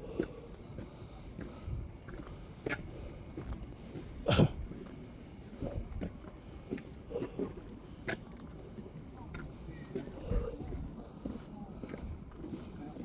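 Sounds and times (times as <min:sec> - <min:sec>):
person coughing: 0:04.3 - 0:04.6.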